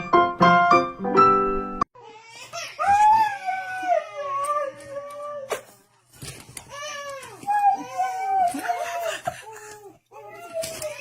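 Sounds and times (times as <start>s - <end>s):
piano music: 0.0s - 1.9s.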